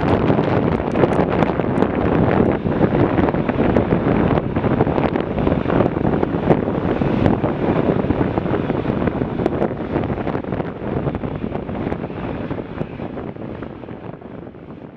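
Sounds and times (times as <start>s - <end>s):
jet engines at take-off power: 0.0s - 14.9s
wind buffeting microphone: 0.0s - 14.9s.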